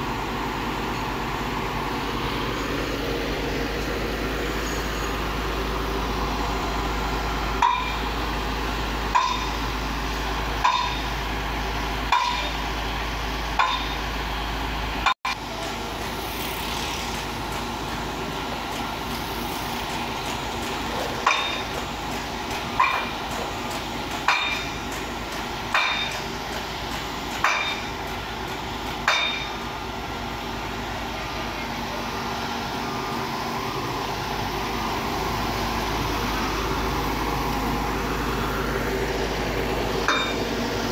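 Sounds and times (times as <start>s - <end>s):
engine running: 0.0s - 40.9s
hammer striking steel: 7.6s - 8.2s, 9.1s - 9.7s, 10.6s - 11.2s, 12.1s - 12.6s, 13.6s - 14.0s, 19.9s - 29.7s, 40.0s - 40.6s.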